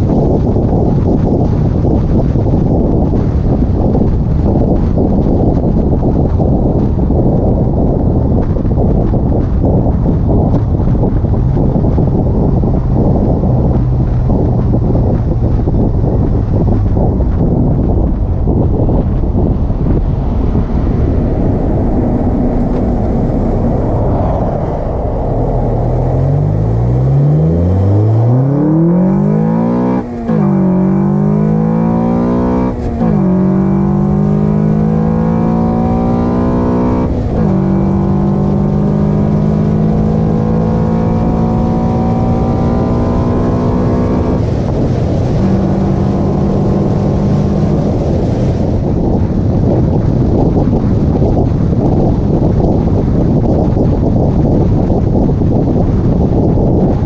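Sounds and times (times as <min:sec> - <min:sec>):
car engine accelerating: 0:00.0 - 0:57.0
wind rush: 0:00.0 - 0:57.0.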